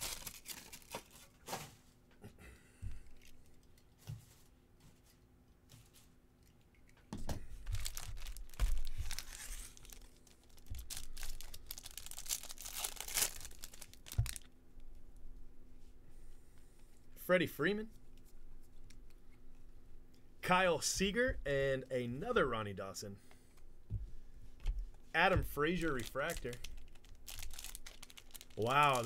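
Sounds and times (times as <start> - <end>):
foil wrapper tearing and crinkling: 0.0 - 1.4, 7.7 - 14.5, 25.6 - 29.0.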